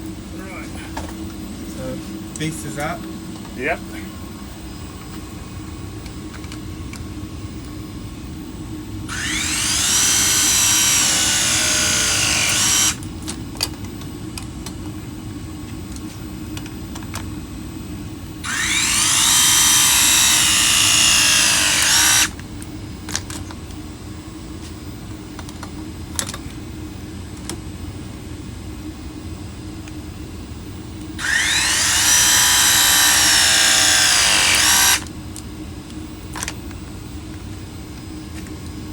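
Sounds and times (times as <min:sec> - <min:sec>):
pipe press tool motor: 0:09.1 - 0:13.0, 0:18.4 - 0:22.4, 0:31.2 - 0:35.1.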